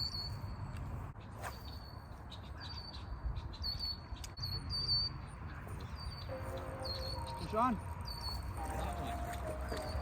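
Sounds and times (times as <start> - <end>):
small bird chirping: 1.2 - 10.0.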